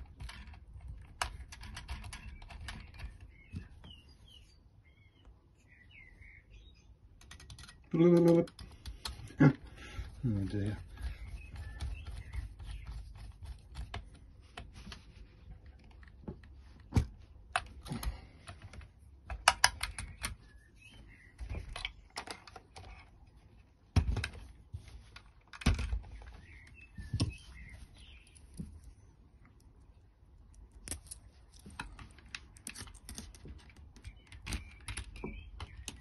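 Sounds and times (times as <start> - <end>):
clicks of small parts handled: 30.4 - 35.2.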